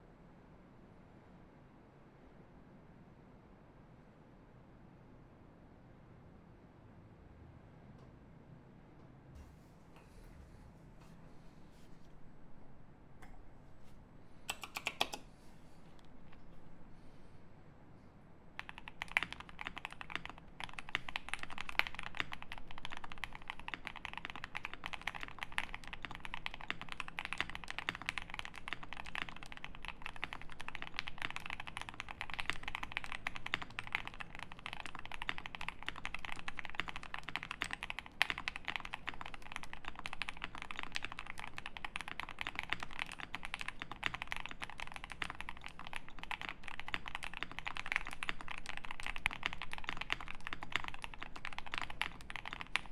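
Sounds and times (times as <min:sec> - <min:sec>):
fast mechanical keyboard typing: 0:14.5 - 0:15.3, 0:18.6 - 0:52.9.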